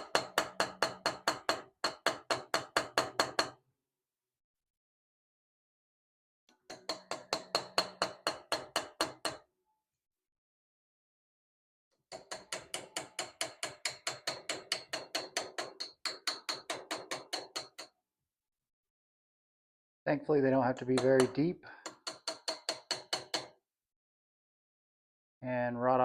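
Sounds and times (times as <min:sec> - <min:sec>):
hammer tapping chisel on metal: 0:00.0 - 0:03.6, 0:06.6 - 0:09.4, 0:12.1 - 0:17.9, 0:20.6 - 0:23.6.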